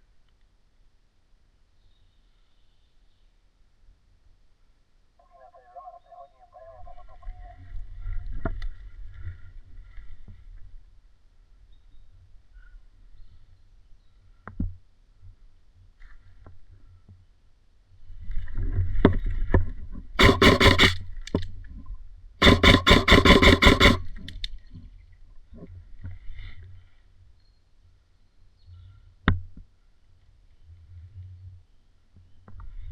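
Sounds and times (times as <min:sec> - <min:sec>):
airsoft gun full-auto bursts: 0:20.2 - 0:21.0, 0:22.4 - 0:24.3.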